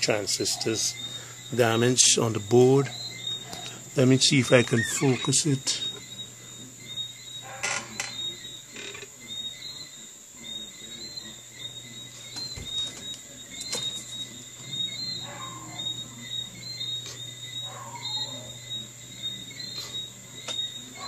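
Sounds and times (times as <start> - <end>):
insects chirping: 0.0 - 21.0
steady high whine: 0.0 - 21.0.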